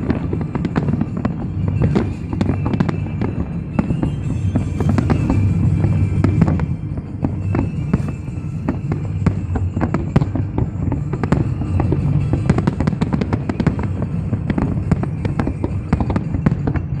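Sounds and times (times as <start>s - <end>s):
low rumble: 0.0s - 12.5s
fireworks bangs and crackles: 0.0s - 17.0s.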